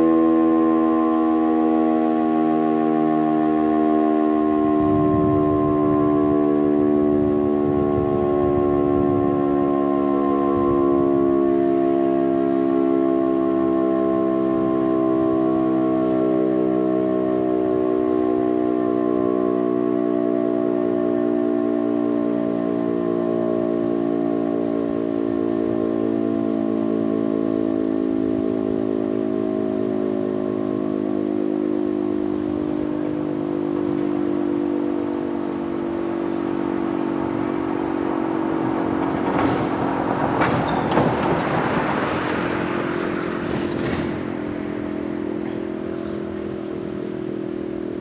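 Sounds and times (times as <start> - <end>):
warning siren steady chord: 0.0 - 48.0
passing vehicle rush: 22.3 - 48.0.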